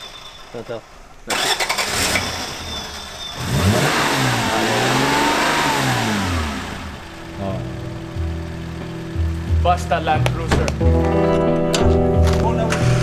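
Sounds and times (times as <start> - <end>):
vehicle engine revving hard: 1.3 - 9.6.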